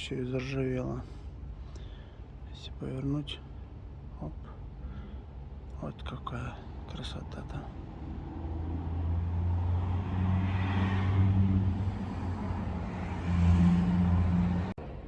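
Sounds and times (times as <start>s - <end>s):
vehicle engine running: 11.3s - 14.8s.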